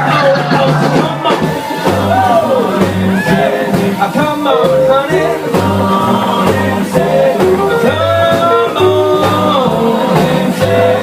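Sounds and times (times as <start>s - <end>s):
live band playing: 0.0s - 11.0s
repeating bass line: 0.0s - 11.0s
wavering melody line: 4.2s - 9.1s.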